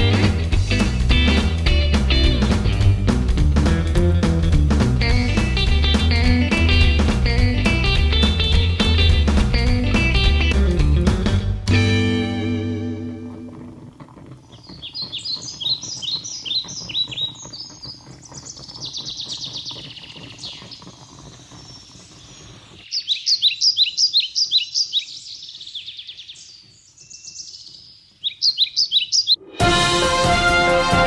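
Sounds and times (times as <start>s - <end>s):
songbird chirping: 13.0s - 29.4s.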